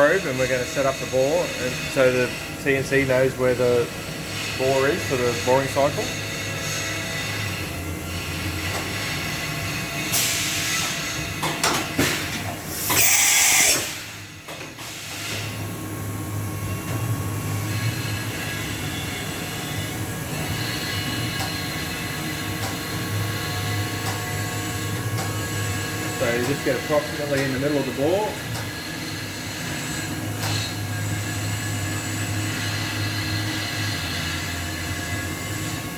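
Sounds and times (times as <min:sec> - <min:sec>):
air hiss: 0:12.7 - 0:14.2.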